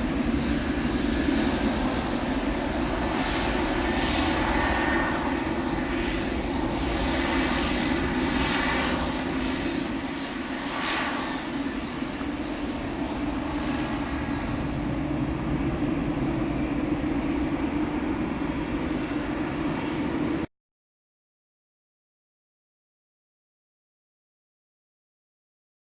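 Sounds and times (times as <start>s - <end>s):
jet engine noise: 0.0s - 20.5s.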